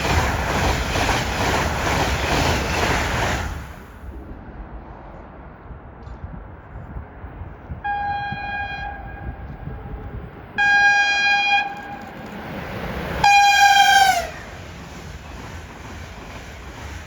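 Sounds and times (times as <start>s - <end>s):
train rumble: 0.0s - 17.0s
train horn blasts: 7.8s - 9.7s, 10.6s - 12.2s, 13.2s - 14.5s.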